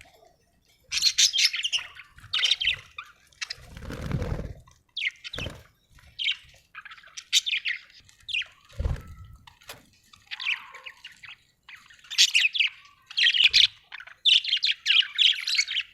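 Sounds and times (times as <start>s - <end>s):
budgerigar chirping and chattering: 0.9s - 3.6s, 5.0s - 8.6s, 10.2s - 15.9s.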